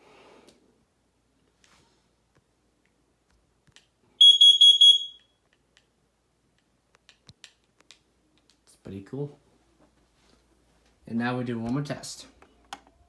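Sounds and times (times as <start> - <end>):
carbon monoxide alarm beeping: 4.2 - 5.3.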